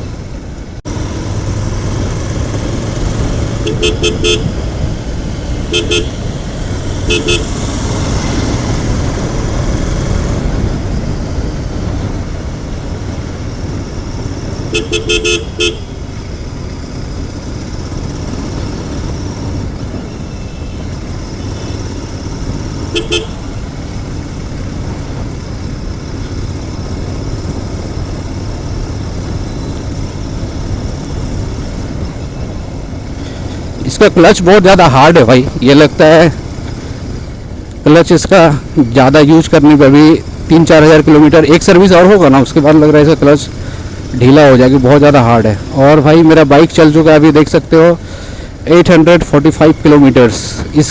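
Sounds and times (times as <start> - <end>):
motorcycle engine running: 0.0 - 50.9
short horn beeps: 3.6 - 4.6, 5.7 - 6.3, 7.0 - 7.6, 14.7 - 16.1, 20.0 - 21.9, 22.9 - 23.7.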